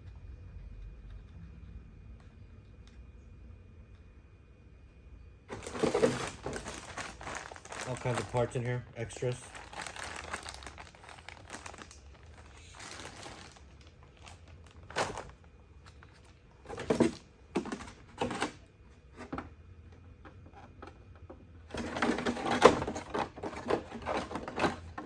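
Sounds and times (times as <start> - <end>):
packaging rustling: 5.5 - 18.6
plastic parts clicking and knocking: 16.7 - 18.6, 20.2 - 25.0.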